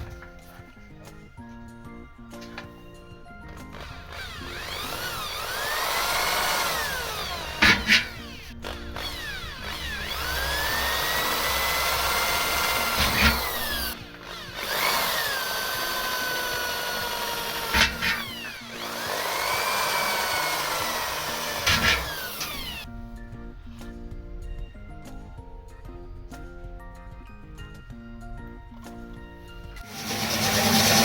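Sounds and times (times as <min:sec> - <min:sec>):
electric drill motor whine: 0:02.1 - 0:22.9, 0:29.6 - 0:31.0
sharp clack: 0:06.4 - 0:08.5.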